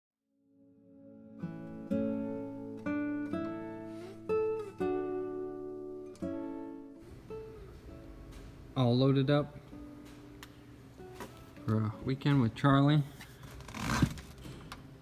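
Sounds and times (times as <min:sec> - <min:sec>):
acoustic guitar plucking: 0:01.0 - 0:09.0.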